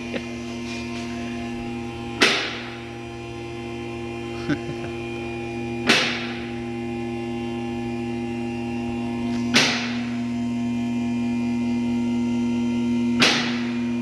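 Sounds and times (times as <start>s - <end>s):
hum of held tones: 0.0s - 14.0s
sharp knock: 13.2s - 13.7s.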